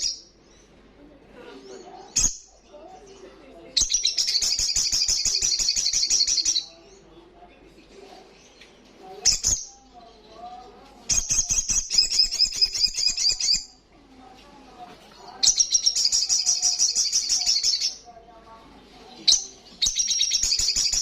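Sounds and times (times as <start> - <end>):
bird trilling song: 0.0 - 0.7, 3.8 - 7.0, 8.4 - 10.3, 11.1 - 13.8, 15.4 - 18.0, 19.1 - 21.0.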